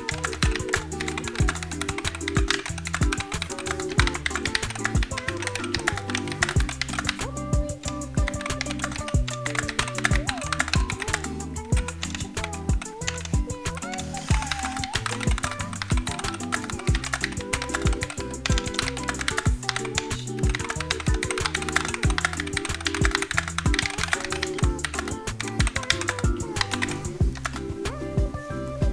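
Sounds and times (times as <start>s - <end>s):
mechanical keyboard typing: 0.0s - 27.7s
background music with bass line: 0.0s - 28.9s.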